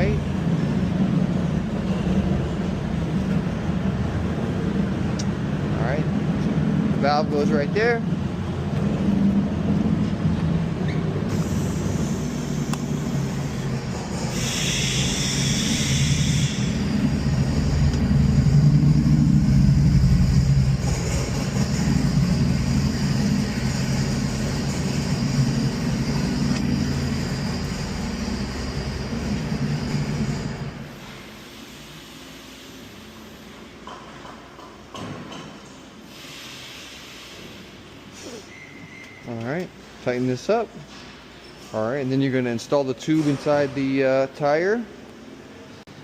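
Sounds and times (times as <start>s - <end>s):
low mechanical rumble: 0.0s - 31.4s.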